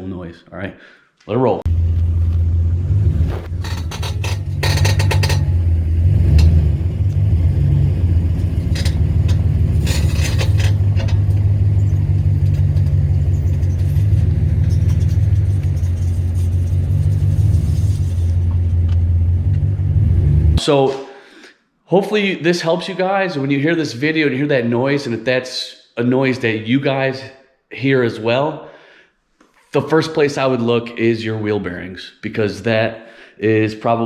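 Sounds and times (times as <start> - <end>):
wheel bearing grinding: 1.7 - 20.6
scraping clicks: 3.2 - 5.6, 8.4 - 19.6.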